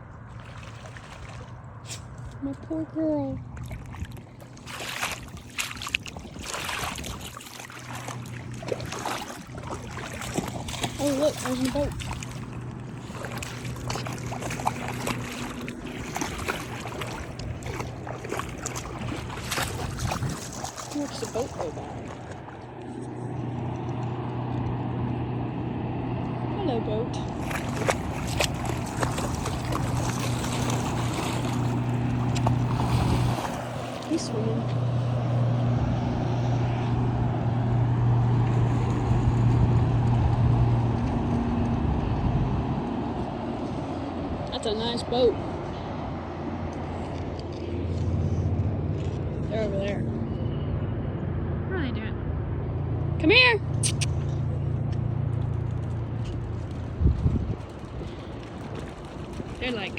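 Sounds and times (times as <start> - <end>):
motorboat engine humming: 0.0 - 59.9
water splashing at shore: 0.2 - 2.4, 3.1 - 24.2, 27.2 - 36.9, 55.2 - 59.9.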